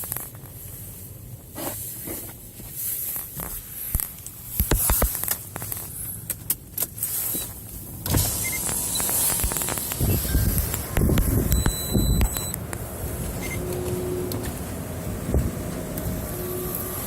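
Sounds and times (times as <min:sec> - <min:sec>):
blizzard wind gusting: 0:09.1 - 0:17.0.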